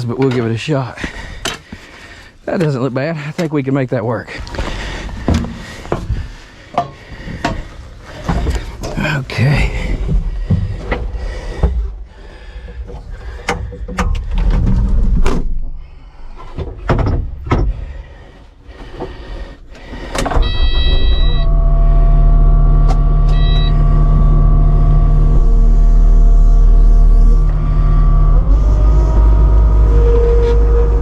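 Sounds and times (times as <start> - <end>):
knocks and clunks: 4.5 - 18.1, 18.7 - 21.5
diesel engine starting and idling: 19.8 - 31.0
electronic warning beeps: 20.4 - 25.2.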